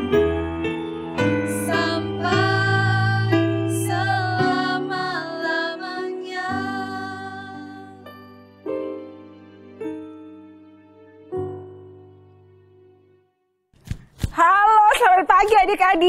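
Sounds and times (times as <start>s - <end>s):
keyboard accompaniment: 0.0s - 13.4s
woman singing worship song: 1.1s - 8.1s.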